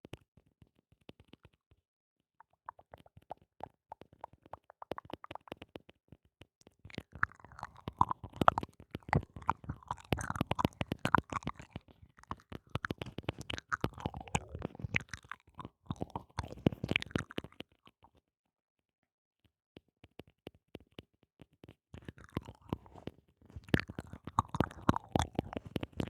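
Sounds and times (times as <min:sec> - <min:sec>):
wet mouth clicks and smacks: 0:02.4 - 0:05.6, 0:06.9 - 0:18.0, 0:22.0 - 0:26.0.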